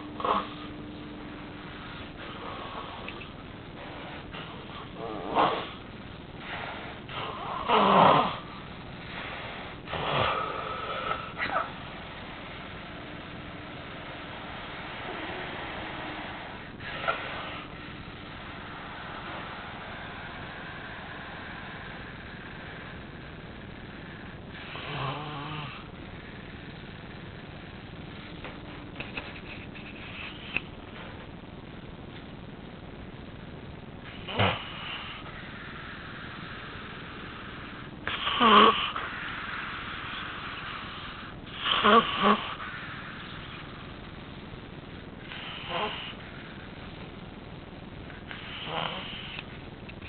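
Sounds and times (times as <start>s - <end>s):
steady hiss: 0.0s - 50.0s
man snoring heavily: 0.2s - 0.7s, 6.8s - 8.5s, 9.6s - 11.6s, 24.5s - 25.8s, 34.1s - 35.3s, 38.0s - 39.1s, 41.0s - 42.7s, 45.3s - 46.2s, 48.3s - 49.4s.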